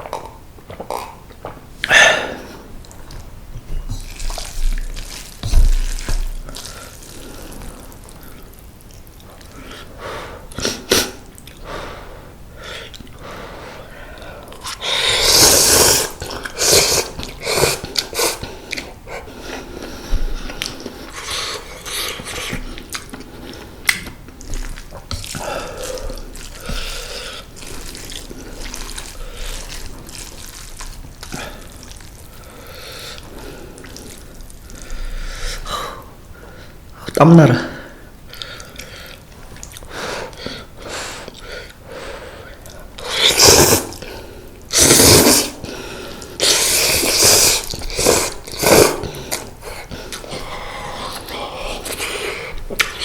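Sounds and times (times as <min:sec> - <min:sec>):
wet chewing: 0:02.8 - 0:09.8, 0:14.4 - 0:35.2, 0:38.3 - 0:40.6, 0:42.6 - 0:53.0
slurping noodles: 0:13.8 - 0:35.7, 0:42.4 - 0:53.0.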